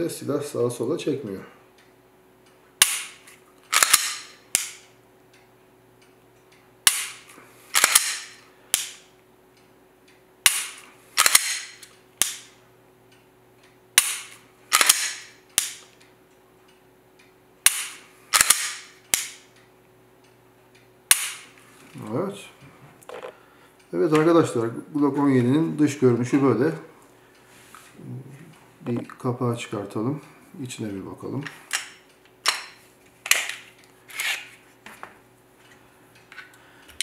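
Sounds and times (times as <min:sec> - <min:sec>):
faint steady hum: 0:00.0 - 0:37.0
pistol slide racking: 0:02.9 - 0:04.8, 0:07.8 - 0:08.9
pistol trigger click: 0:03.7 - 0:04.8, 0:10.5 - 0:12.5, 0:17.7 - 0:19.4.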